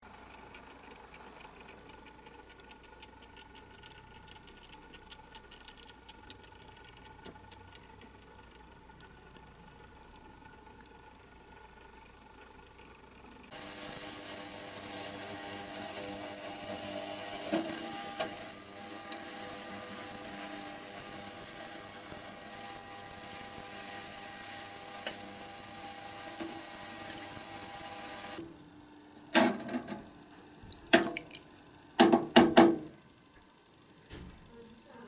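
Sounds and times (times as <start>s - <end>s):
light ticking: 13.5s - 28.4s
tool rasping harshly: 13.5s - 28.4s.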